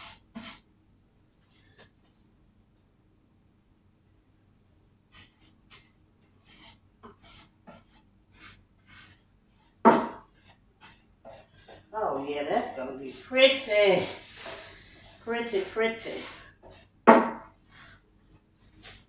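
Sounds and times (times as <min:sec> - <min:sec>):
paintbrush strokes on wood: 0:05.1 - 0:19.0.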